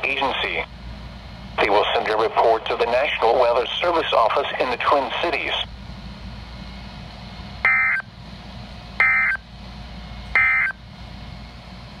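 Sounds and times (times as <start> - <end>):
broadcast hum and hiss: 0.0 - 12.0
electronic data tone bursts: 7.7 - 8.0, 9.0 - 9.4, 10.4 - 10.8.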